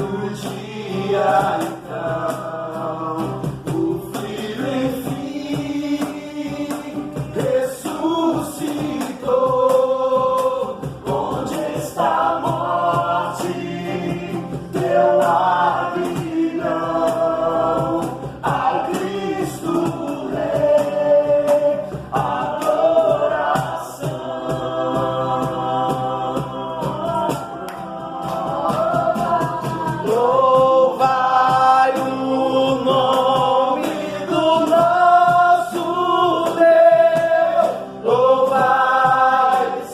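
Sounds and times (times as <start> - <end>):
gospel choir singing: 0.0 - 39.9
instrumental accompaniment: 0.0 - 39.9.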